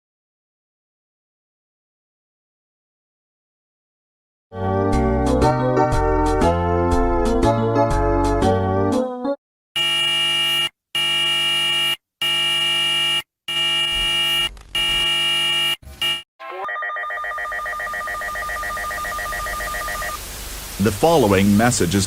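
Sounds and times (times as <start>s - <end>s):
long electronic beeps: 9.8s - 16.2s.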